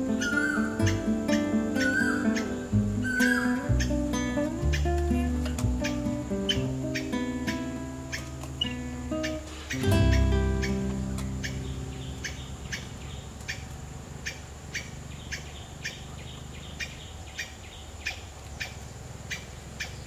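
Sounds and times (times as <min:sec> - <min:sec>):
small bird chirping: 0:00.0 - 0:20.0
guitar chord: 0:00.8 - 0:13.2.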